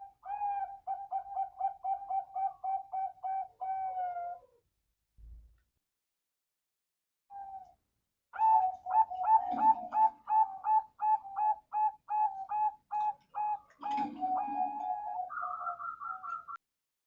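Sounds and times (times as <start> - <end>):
dove cooing: 0.0 - 4.6, 8.4 - 16.6.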